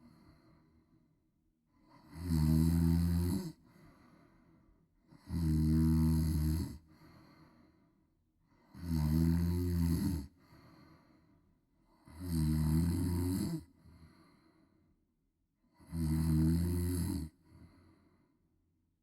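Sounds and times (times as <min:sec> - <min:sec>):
quiet breathing: 0:00.0 - 0:02.2, 0:03.4 - 0:05.3, 0:06.7 - 0:08.8, 0:10.2 - 0:12.2, 0:13.6 - 0:15.1, 0:17.3 - 0:18.5
woman snoring loudly: 0:01.9 - 0:03.6, 0:05.2 - 0:06.9, 0:08.7 - 0:10.3, 0:12.0 - 0:13.7, 0:15.8 - 0:17.4.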